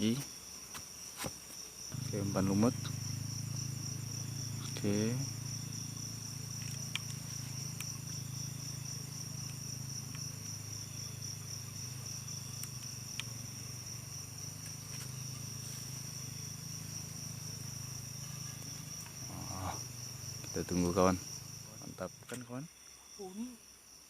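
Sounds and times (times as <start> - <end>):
night insects trilling: 0.0 - 24.0
low steady hum: 1.9 - 20.5.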